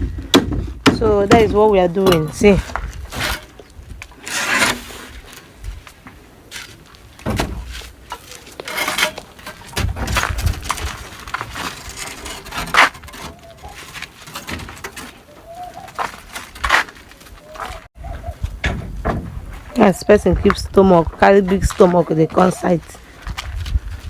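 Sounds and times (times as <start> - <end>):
construction knocks and scrapes: 0.0 - 5.8, 6.5 - 17.8, 18.4 - 19.8
bird calls: 15.2 - 16.2, 17.2 - 18.5.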